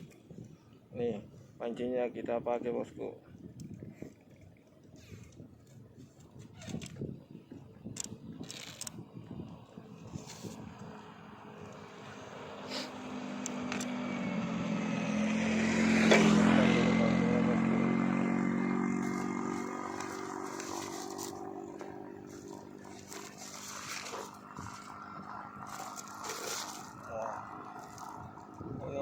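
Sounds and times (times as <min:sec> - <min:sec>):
engine passing by: 0:09.7 - 0:29.0.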